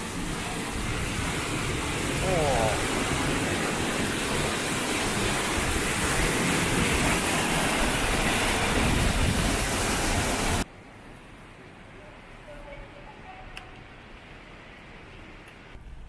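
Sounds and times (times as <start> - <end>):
wind buffeting microphone: 0.0 - 10.6.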